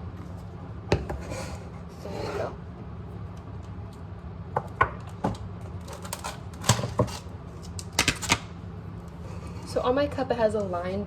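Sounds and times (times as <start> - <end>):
kitchen items clicking and knocking: 8.0 - 8.5.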